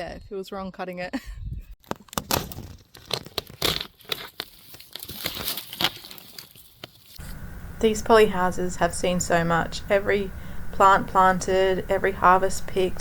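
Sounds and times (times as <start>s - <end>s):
plastic sheet crinkling and tearing: 1.8s - 7.2s.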